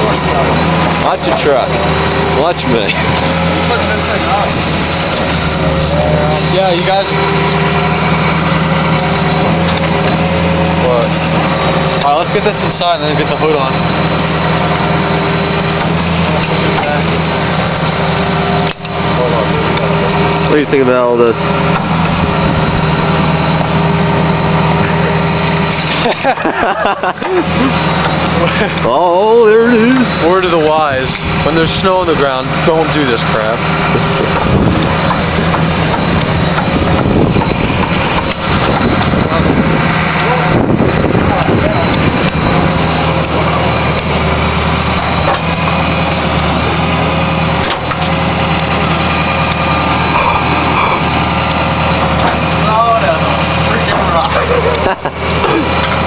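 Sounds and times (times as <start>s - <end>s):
engine idling: 0.0s - 56.0s.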